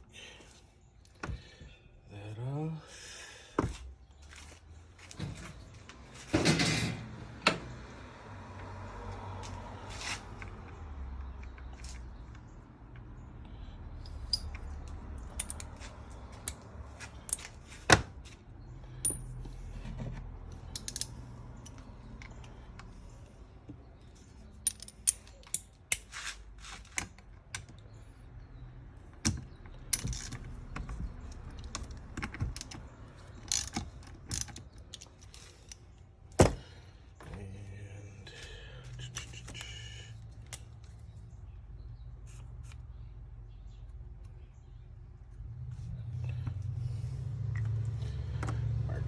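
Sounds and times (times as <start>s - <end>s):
metal tools clicking and clinking: 14.0s - 16.6s, 18.9s - 19.5s, 20.5s - 22.6s, 24.2s - 26.1s, 29.6s - 30.7s, 31.3s - 35.9s.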